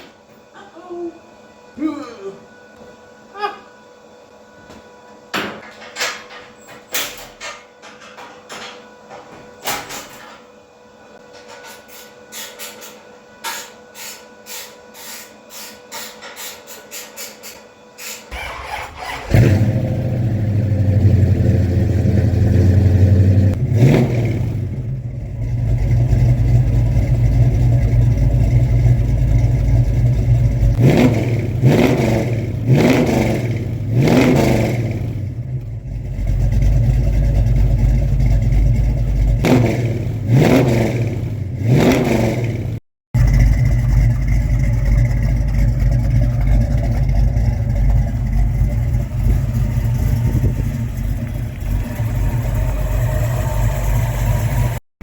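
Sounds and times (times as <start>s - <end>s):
engine starting and revving: 18.0s - 54.8s.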